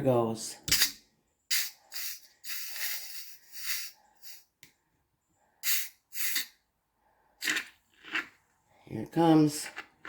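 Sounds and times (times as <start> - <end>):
gas hissing from bottle: 1.5 - 4.4, 5.6 - 6.5.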